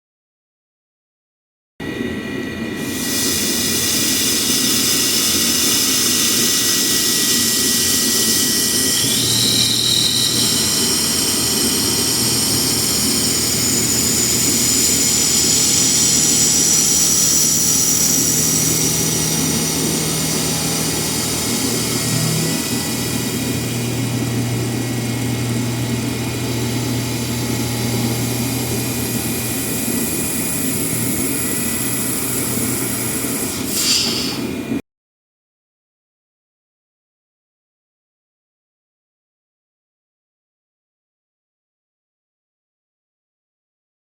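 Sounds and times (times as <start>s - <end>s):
milling machine whine: 1.8s - 34.8s
low hum: 8.4s - 33.3s.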